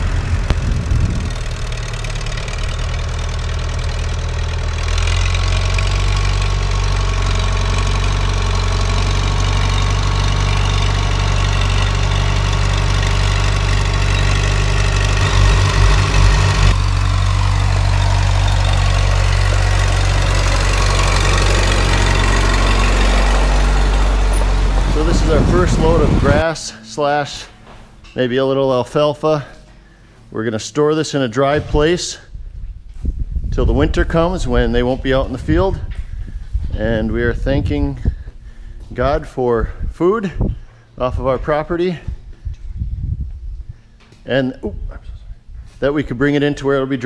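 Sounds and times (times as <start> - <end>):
low thumps: 0.0 - 3.2, 9.4 - 26.4
tractor diesel engine running: 0.0 - 30.5.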